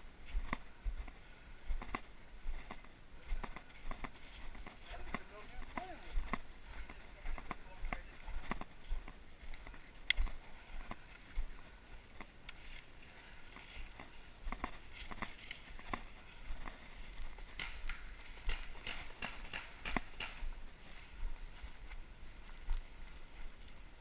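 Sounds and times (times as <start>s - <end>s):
sharp clicks and knocks: 17.5s - 20.5s.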